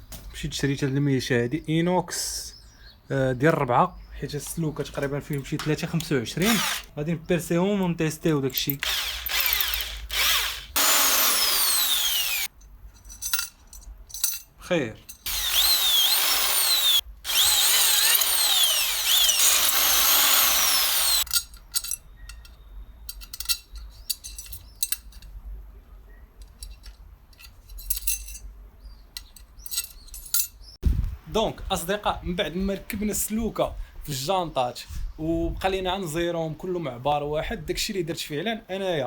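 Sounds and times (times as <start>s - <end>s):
electric drill squealing in metal: 6.4s - 6.9s, 8.7s - 12.5s, 15.3s - 21.3s.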